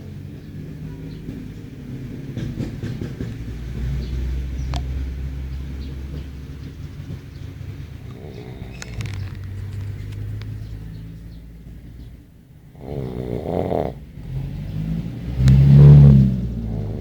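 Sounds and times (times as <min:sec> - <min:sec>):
person snoring: 0:08.1 - 0:08.8, 0:12.7 - 0:14.0.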